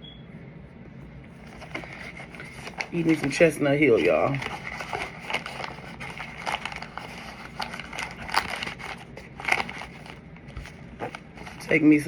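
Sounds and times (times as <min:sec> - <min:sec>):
food crinkling and crackling: 0:01.4 - 0:12.0.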